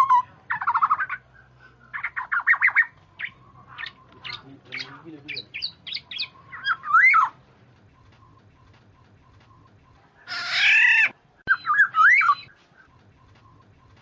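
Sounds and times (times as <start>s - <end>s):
bird whistled notes: 2.0s - 7.4s, 10.4s - 12.6s.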